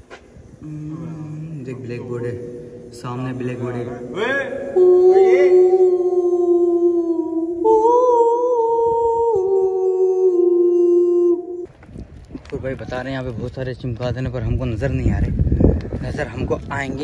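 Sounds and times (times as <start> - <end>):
eerie wordless humming tone: 0.6 - 11.7.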